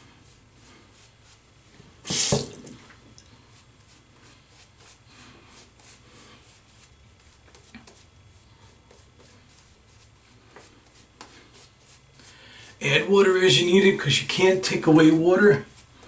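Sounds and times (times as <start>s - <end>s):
shaving brush swishing lather: 2.1s - 2.8s, 3.5s - 12.2s
water tap running: 2.1s - 3.0s.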